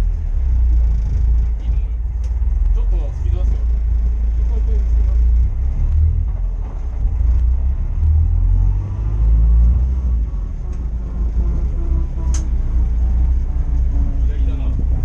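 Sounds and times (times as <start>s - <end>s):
vehicle running rumble: 0.0s - 15.0s
sharp click: 12.3s - 12.5s.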